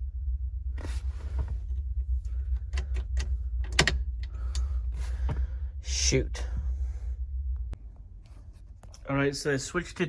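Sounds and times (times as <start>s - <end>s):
steady low hum: 0.0s - 10.0s
sharp clicks and knocks: 2.6s - 4.7s.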